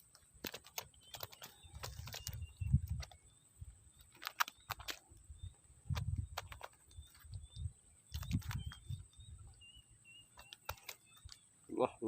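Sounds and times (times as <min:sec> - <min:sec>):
sharp handling clicks: 0:00.0 - 0:03.2, 0:04.0 - 0:05.2, 0:10.3 - 0:11.4
bird chirps: 0:00.0 - 0:12.0
insect drone: 0:00.0 - 0:12.0.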